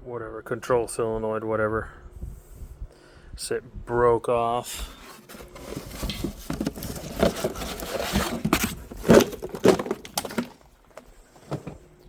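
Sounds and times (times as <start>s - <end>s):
hard parts clicking and rattling: 5.1s - 11.7s.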